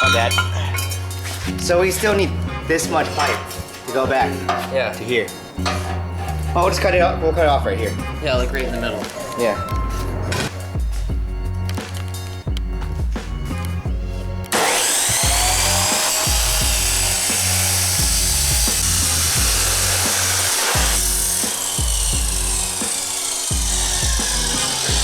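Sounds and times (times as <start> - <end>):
background music with bass beat: 5.6 - 14.5
power tool cutting metal pipe: 14.5 - 25.0.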